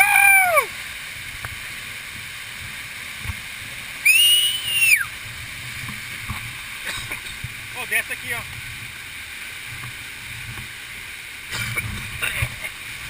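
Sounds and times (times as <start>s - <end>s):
waterfall rushing: 0.0s - 13.0s
person whistling loudly: 4.0s - 5.1s.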